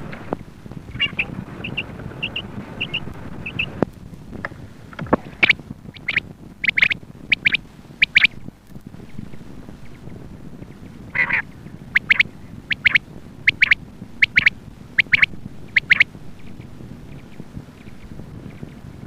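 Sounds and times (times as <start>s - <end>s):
quail calling: 0.0s - 3.8s, 5.1s - 8.4s, 11.1s - 16.6s.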